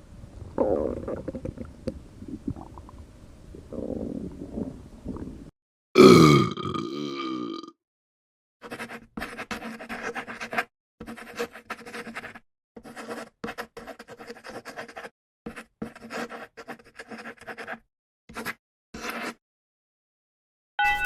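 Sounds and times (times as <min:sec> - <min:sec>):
person burping: 0:06.0 - 0:07.8.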